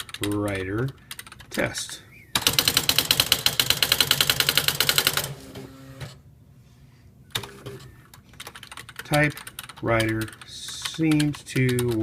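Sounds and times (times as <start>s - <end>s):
electronic typewriter printing: 2.4s - 6.2s
typewriter carriage motor hum: 2.4s - 6.2s.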